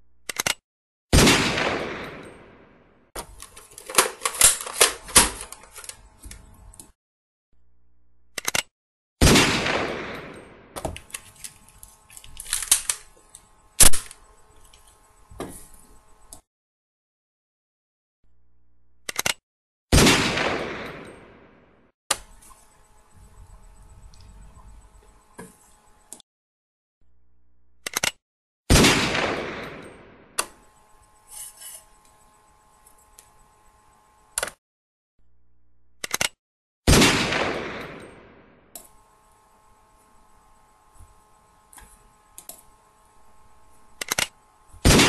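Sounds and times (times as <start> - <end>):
gunshot bangs: 1.1 - 2.6, 9.2 - 10.7, 19.9 - 21.4, 28.7 - 30.2, 36.9 - 38.4
gun clicks: 3.4 - 6.0, 9.6 - 13.1, 13.8 - 14.2, 44.0 - 45.0.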